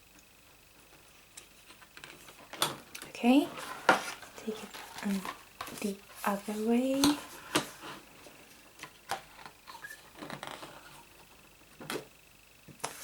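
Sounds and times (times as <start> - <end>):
paper rustling: 3.4 - 8.0.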